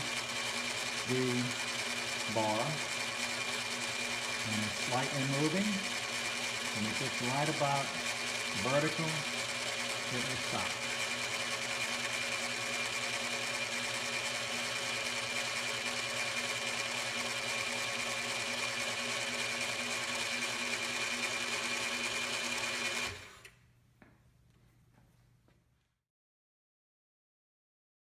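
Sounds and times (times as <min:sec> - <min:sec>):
lathe gears whining: 0:00.0 - 0:23.4.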